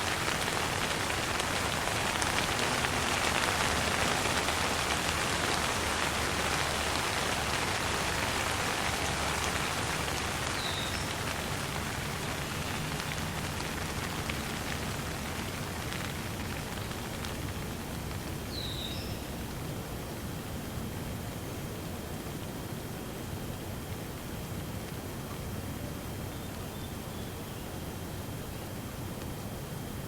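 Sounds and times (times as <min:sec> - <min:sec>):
light rain falling: 0:00.0 - 0:30.0.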